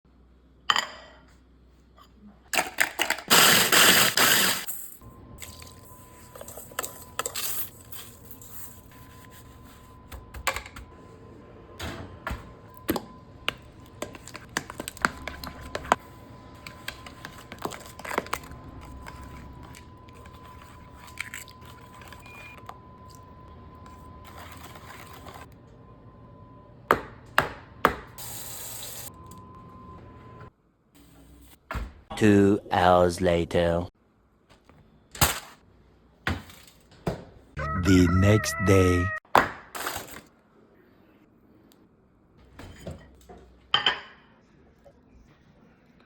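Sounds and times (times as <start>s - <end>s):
utensils and dishes clinking: 2.6s - 8.9s.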